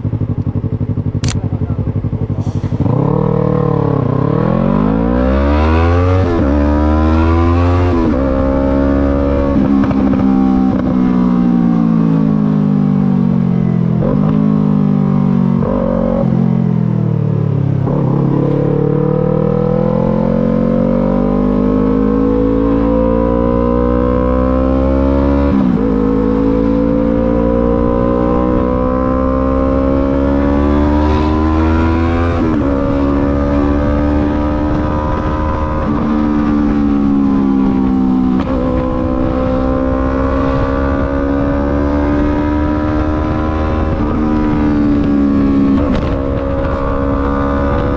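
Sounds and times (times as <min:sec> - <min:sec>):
motorcycle engine: 0:00.0 - 0:47.9.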